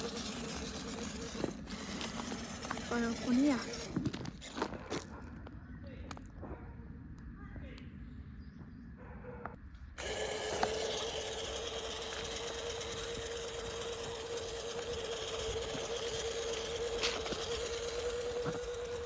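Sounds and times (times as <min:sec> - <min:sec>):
electric motor and gearbox whining: 0:00.0 - 0:05.0, 0:10.0 - 0:19.0.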